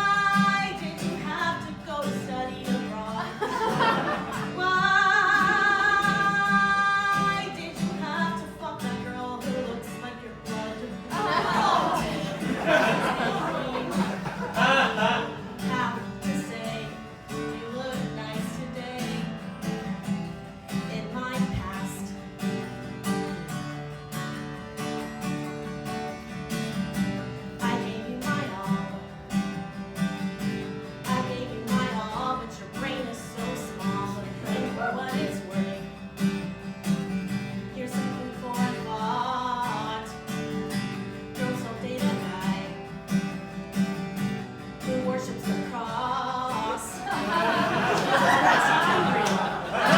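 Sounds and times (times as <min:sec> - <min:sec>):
woman singing: 0:00.0 - 0:19.9, 0:20.7 - 0:22.6, 0:27.4 - 0:29.2, 0:30.9 - 0:36.4, 0:37.5 - 0:43.2, 0:44.6 - 0:47.4
acoustic guitar strumming: 0:00.0 - 0:49.9.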